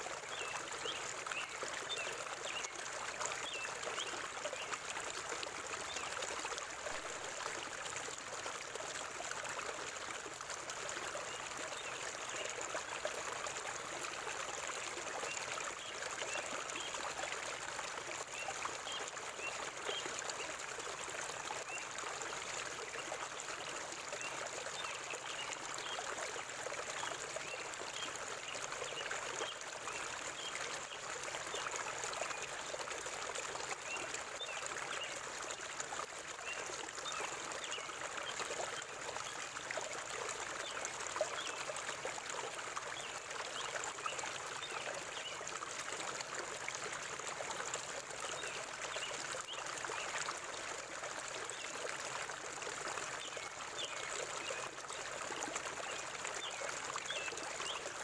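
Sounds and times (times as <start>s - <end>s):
river water babbling: 0.0s - 58.0s.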